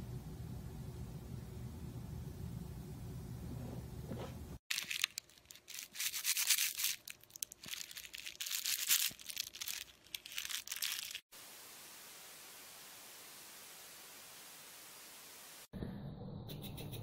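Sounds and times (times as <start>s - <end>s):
faint steady hiss: 11.3s - 15.7s.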